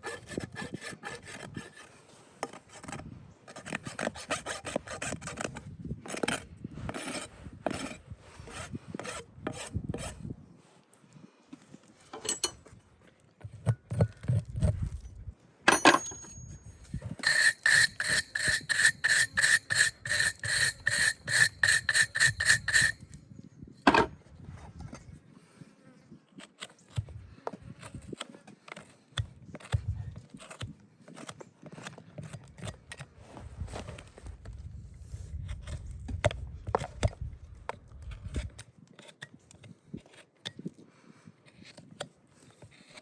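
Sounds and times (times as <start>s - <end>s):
hoof rasp filing: 0.0s - 10.2s, 15.7s - 23.2s
high ringing squeal: 15.7s - 20.2s.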